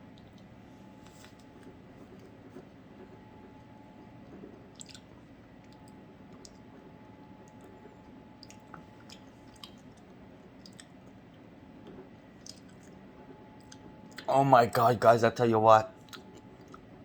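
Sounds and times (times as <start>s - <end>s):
mouth clicks and smacks chewing: 4.7s - 6.7s, 8.4s - 11.4s, 12.3s - 13.0s, 13.6s - 14.3s, 16.0s - 17.0s.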